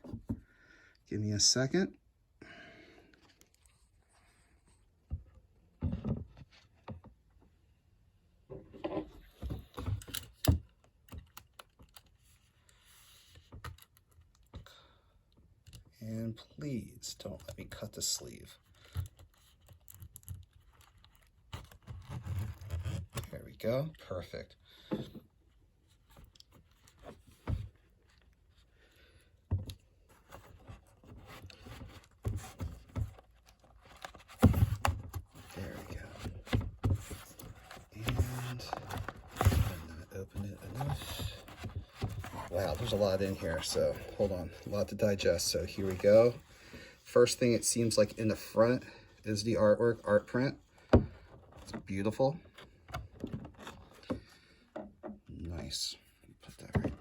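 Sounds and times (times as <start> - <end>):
record sleeve scraping and rustling: 17.1 - 24.3, 25.4 - 28.8, 29.7 - 50.6
hands handling record jacket: 34.7 - 46.4.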